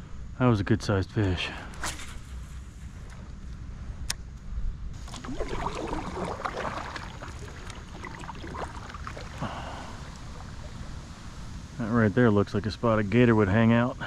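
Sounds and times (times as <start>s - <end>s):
water splashing and dripping: 5.0s - 11.5s.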